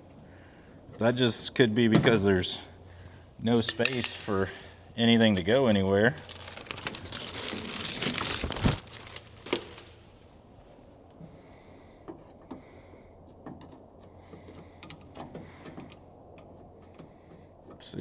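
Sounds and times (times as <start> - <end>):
rustling crinkling handling noise: 3.5 - 10.9.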